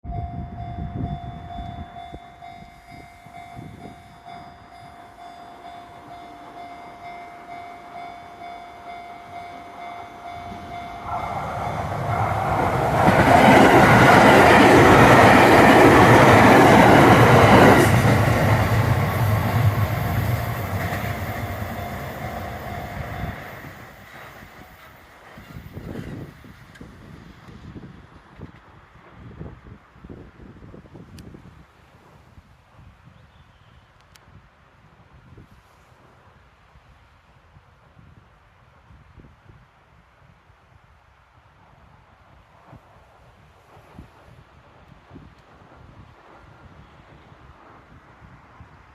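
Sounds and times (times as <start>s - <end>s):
level crossing warning bell: 0.0s - 12.2s, 13.5s - 24.0s
train passing: 0.1s - 29.6s.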